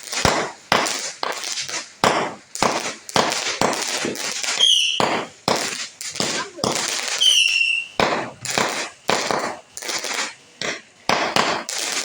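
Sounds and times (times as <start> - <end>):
firecrackers banging: 0.0 - 12.0
short high whistle: 4.6 - 5.0, 7.2 - 8.0.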